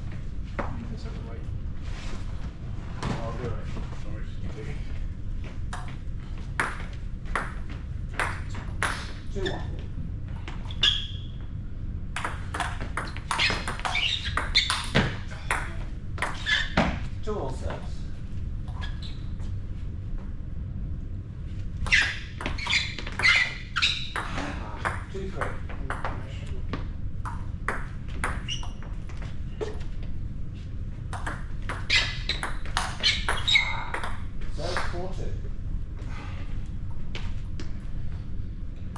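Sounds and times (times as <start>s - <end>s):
short high squeaks: 10.7s - 11.5s, 13.3s - 14.9s, 16.4s - 16.8s, 18.7s - 19.4s, 21.8s - 24.2s, 31.9s - 34.0s.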